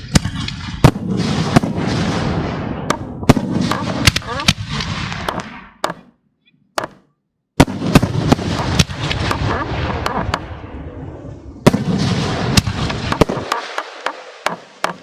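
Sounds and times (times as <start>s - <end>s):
firework shells bursting: 2.8s - 6.1s, 7.6s - 10.6s, 11.7s - 15.0s.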